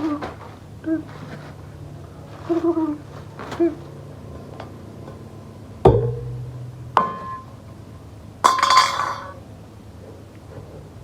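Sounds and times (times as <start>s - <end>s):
jangling clatter: 8.5s - 9.4s.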